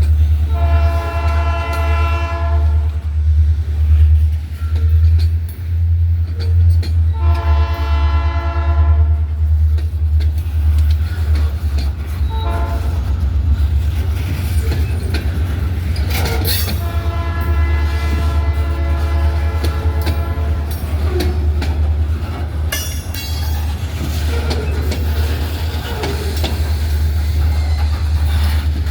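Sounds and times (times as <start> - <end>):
locomotive horn blasts: 0.5 - 3.0, 7.1 - 9.3, 12.2 - 13.1, 16.2 - 21.4.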